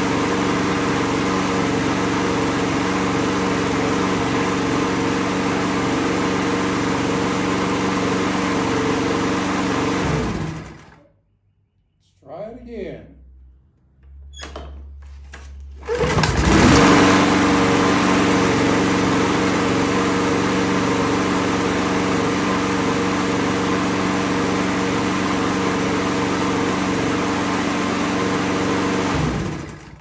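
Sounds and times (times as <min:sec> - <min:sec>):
lawn mower engine starting and running: 0:00.0 - 0:11.0, 0:14.4 - 0:30.0.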